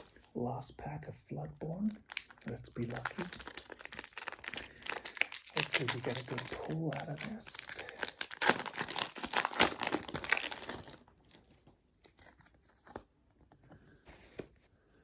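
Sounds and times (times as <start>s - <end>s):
foil wrapper tearing and crinkling: 1.9s - 13.0s.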